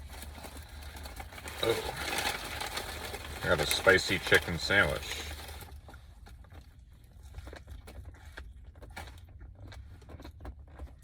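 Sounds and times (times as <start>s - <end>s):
chewing crunches: 5.0s - 11.0s.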